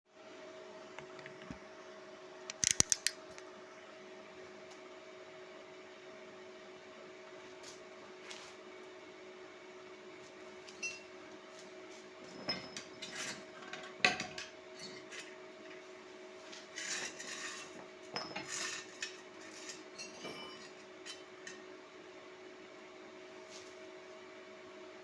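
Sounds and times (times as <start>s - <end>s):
hard objects clinking and clattering: 16.6s - 21.6s.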